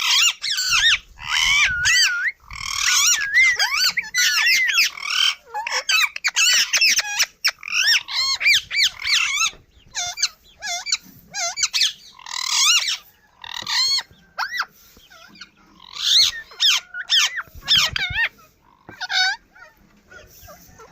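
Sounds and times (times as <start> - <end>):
parrot chicks squawking: 0.0 - 20.9.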